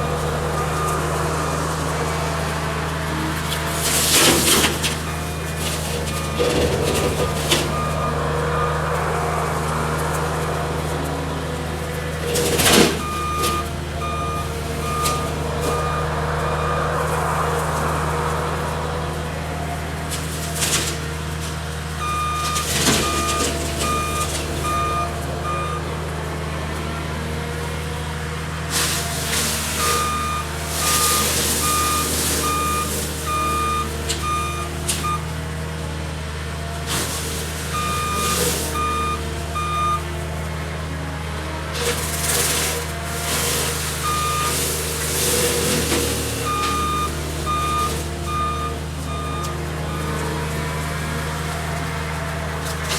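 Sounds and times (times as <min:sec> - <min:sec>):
brush breaking and crashing: 0:00.0 - 0:52.9
diesel engine running under load: 0:00.0 - 0:52.9
backup alarm beeping: 0:04.2 - 0:08.9, 0:12.4 - 0:17.2, 0:22.0 - 0:25.9, 0:29.7 - 0:35.3, 0:37.7 - 0:40.1, 0:43.9 - 0:44.7, 0:45.6 - 0:50.3.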